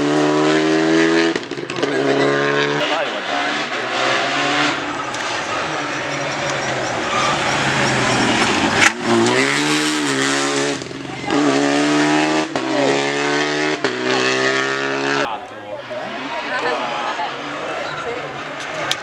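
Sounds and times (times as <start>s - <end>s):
rally car engine accelerating: 0.0s - 19.0s
sharp crack: 2.8s - 12.7s.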